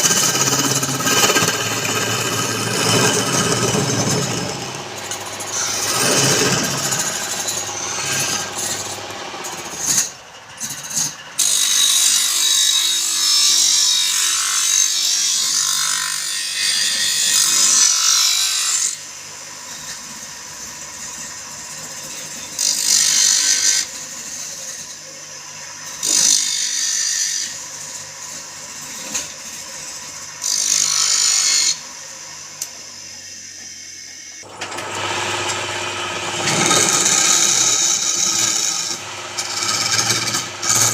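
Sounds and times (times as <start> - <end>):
wood lathe humming: 0.0 - 10.2, 34.4 - 40.9
tool scraping spinning wood: 0.0 - 11.2, 34.4 - 40.9.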